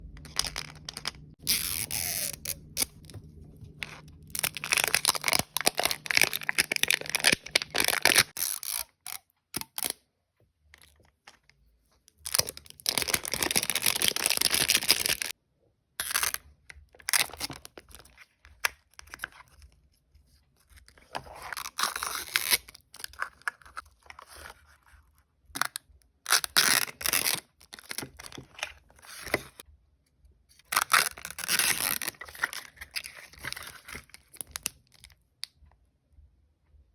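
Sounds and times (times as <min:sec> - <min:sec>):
plastic packaging tearing and crinkling: 0:00.1 - 0:09.9, 0:12.3 - 0:15.3, 0:21.2 - 0:24.6, 0:25.6 - 0:29.6, 0:30.6 - 0:35.2.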